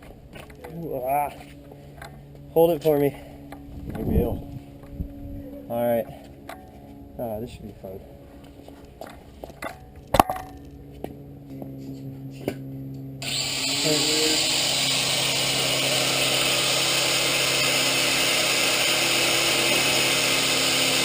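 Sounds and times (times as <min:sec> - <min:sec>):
low hum: 0:00.0 - 0:21.0
grinder cutting metal pipe: 0:13.2 - 0:21.0.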